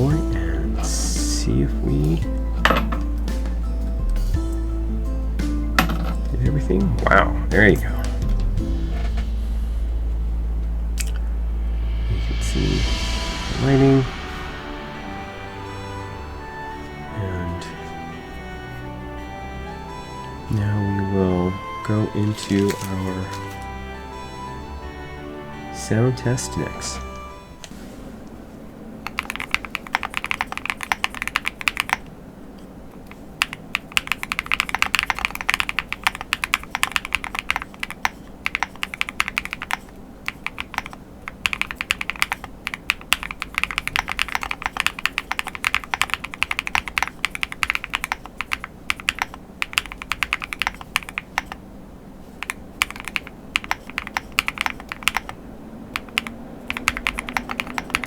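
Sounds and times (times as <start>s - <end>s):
mechanical keyboard typing: 29.1s - 32.1s, 33.4s - 51.6s, 52.4s - 55.4s, 56.0s - 58.0s.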